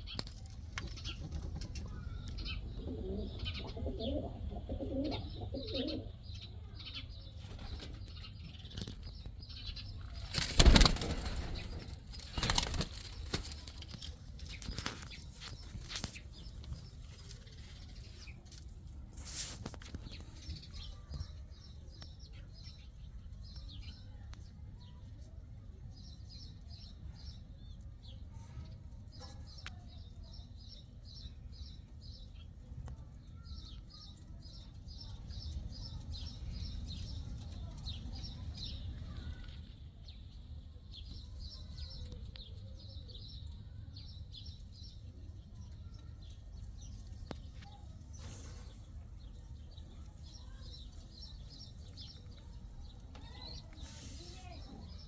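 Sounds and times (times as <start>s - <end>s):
pigeon wings flapping: 10.2s - 14.0s.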